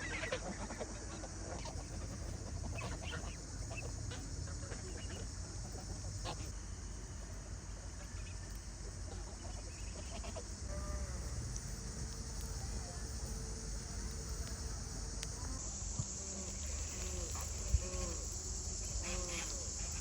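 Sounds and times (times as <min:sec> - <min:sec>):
steady high hiss: 0:00.0 - 0:20.0.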